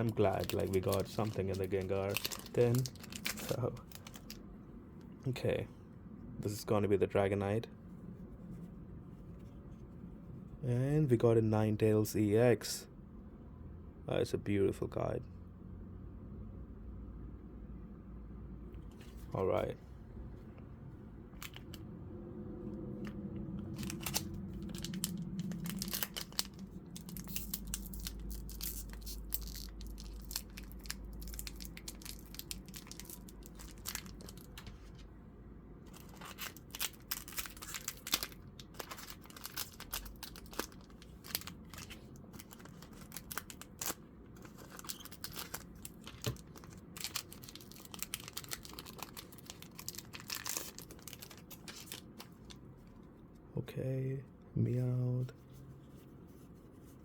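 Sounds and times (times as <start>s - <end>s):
cards rustling and flicking: 0.0s - 4.4s, 23.0s - 35.0s
foil wrapper crinkling and tearing: 0.0s - 4.4s, 23.7s - 35.0s, 35.9s - 52.6s.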